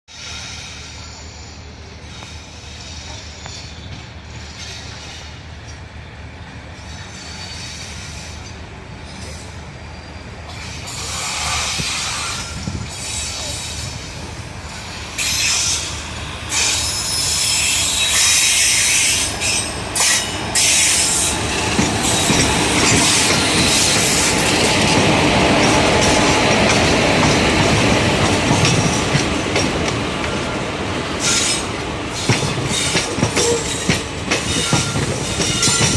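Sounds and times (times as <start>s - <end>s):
train wheels rolling on rails: 0.1s - 35.9s.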